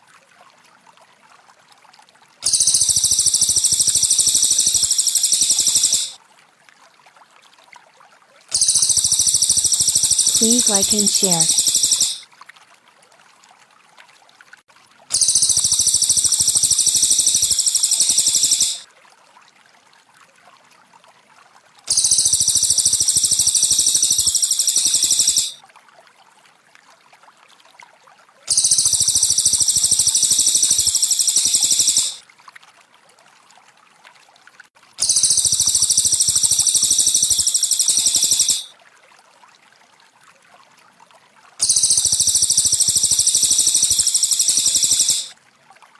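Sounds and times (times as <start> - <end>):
trickling water: 0.0 - 45.9
high dense bird chirping: 2.5 - 6.2, 8.6 - 12.2, 15.1 - 18.8, 21.9 - 25.6, 28.5 - 32.2, 35.0 - 38.7, 41.6 - 45.3.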